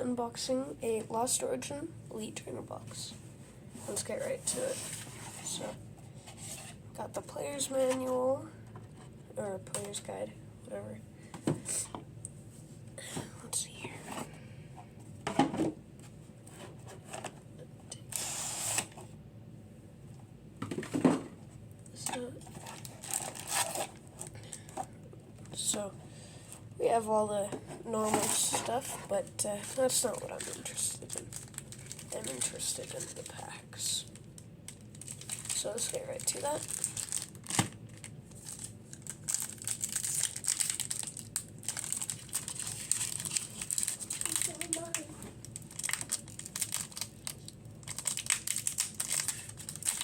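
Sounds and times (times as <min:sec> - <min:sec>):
foil wrappers crinkling: 0:22.5 - 0:24.7, 0:29.6 - 0:50.0.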